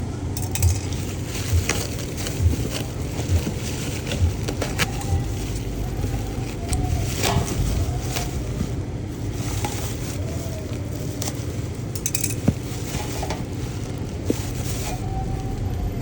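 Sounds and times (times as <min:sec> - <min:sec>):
steady low rumble: 0:00.0 - 0:16.0
packaging rustling: 0:00.4 - 0:16.0.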